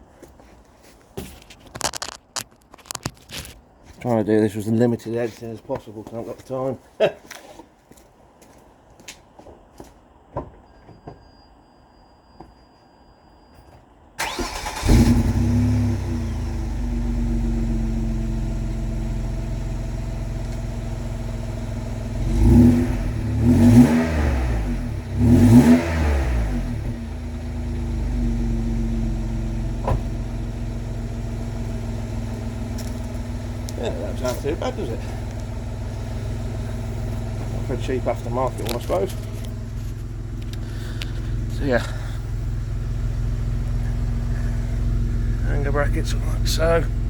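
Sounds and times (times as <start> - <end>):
car engine idling and revving: 14.2 - 47.0.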